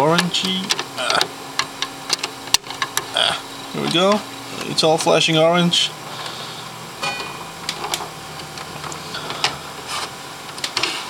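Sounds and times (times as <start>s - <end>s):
hard drive clicks and scrapes: 6.0s - 11.0s.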